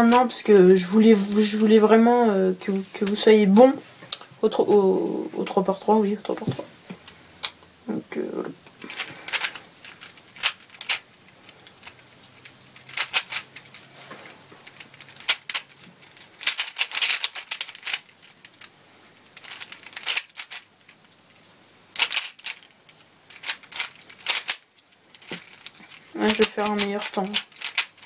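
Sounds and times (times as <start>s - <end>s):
speed cube layers clicking: 11.6s - 13.8s, 14.7s - 18.7s, 19.4s - 20.6s, 22.0s - 22.6s, 23.4s - 24.6s.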